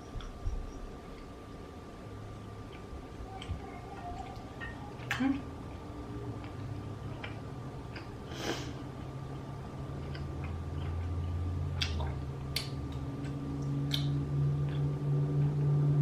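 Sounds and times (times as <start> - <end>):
low steady hum: 0.0 - 16.0
wet chewing and squishing: 2.4 - 8.2, 8.9 - 15.6
mouth smacks: 11.7 - 14.8.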